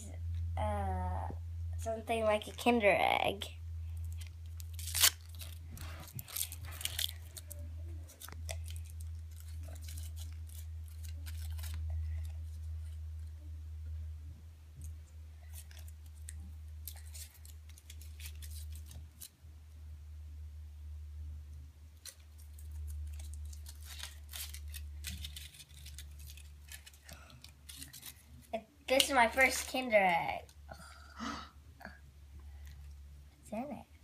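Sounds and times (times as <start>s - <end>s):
steady low hum: 0.0s - 34.0s
foil wrapper crinkling: 3.9s - 13.3s, 14.8s - 19.3s, 22.0s - 30.6s.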